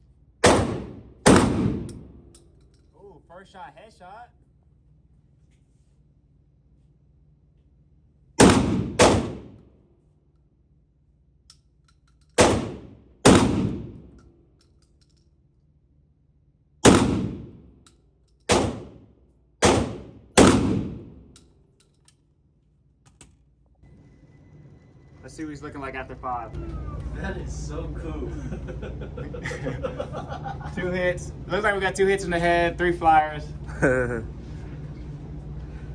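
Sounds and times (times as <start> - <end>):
shotgun shots echoing: 0.4 - 2.3, 8.4 - 9.6, 12.4 - 14.1, 16.8 - 17.7, 18.5 - 21.4.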